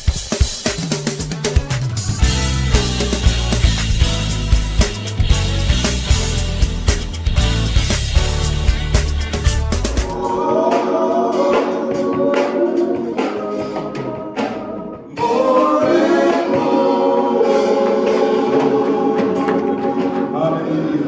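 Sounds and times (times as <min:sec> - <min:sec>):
instrumental backing: 0:00.0 - 0:21.0
gospel choir singing: 0:09.9 - 0:21.0.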